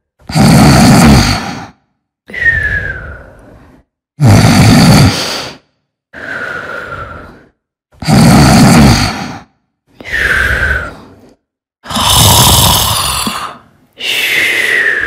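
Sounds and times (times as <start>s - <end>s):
person snoring: 0.2s - 1.8s, 4.2s - 5.6s, 8.0s - 9.5s, 11.8s - 15.0s
whistling out-breath: 2.3s - 4.0s, 6.1s - 7.6s, 10.0s - 11.4s, 14.0s - 15.0s.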